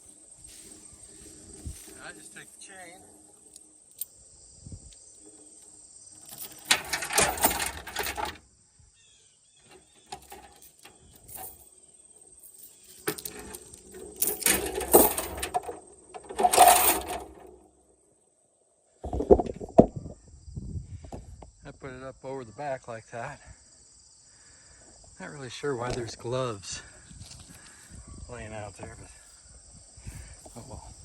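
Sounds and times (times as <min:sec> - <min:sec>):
steel chain rattling: 0:06.2 - 0:08.4, 0:09.6 - 0:17.7.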